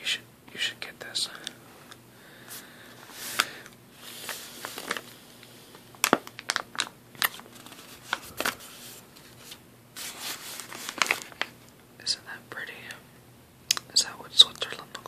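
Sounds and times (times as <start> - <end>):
plastic bag crinkling: 3.2 - 11.6.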